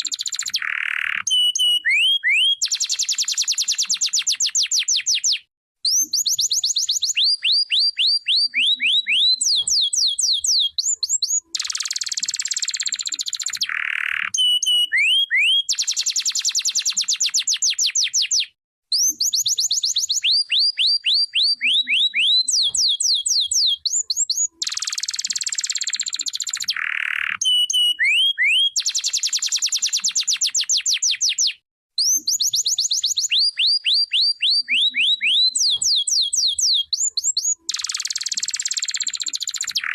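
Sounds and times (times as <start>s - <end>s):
canary singing: 0.0s - 39.9s.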